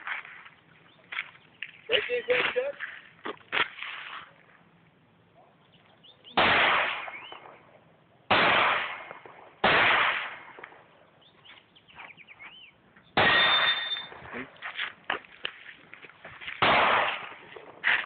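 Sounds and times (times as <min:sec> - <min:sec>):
pistol shots: 0:06.3 - 0:07.6, 0:08.3 - 0:10.9, 0:13.2 - 0:14.3, 0:16.6 - 0:17.8.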